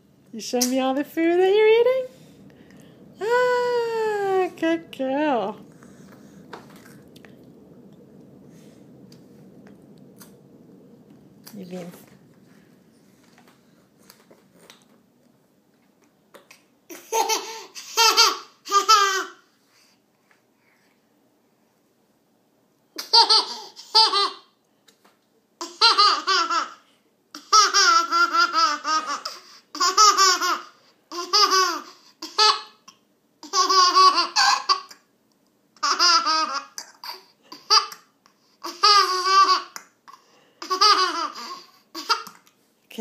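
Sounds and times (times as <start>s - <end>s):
baby laughing: 16.9s - 19.4s, 23.0s - 24.5s, 25.6s - 35.1s, 35.8s - 42.5s.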